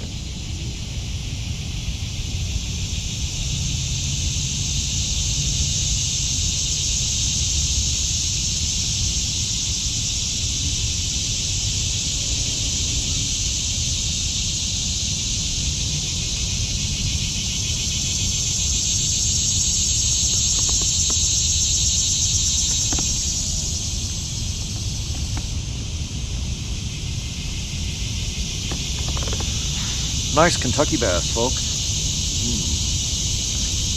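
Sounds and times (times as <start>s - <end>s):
insects buzzing: 0.0s - 33.9s
low wind rumble: 0.0s - 33.9s.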